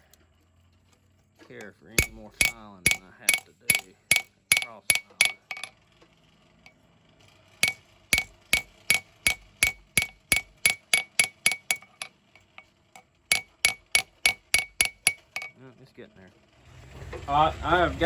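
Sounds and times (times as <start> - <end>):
hammer striking steel on anvil: 2.0 - 5.7, 7.6 - 12.6, 13.3 - 15.5.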